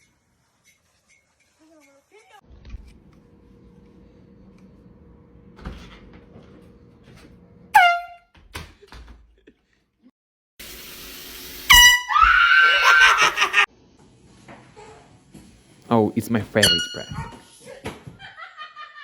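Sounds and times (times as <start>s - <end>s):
air horn blasts: 7.8s - 8.2s, 11.7s - 12.2s.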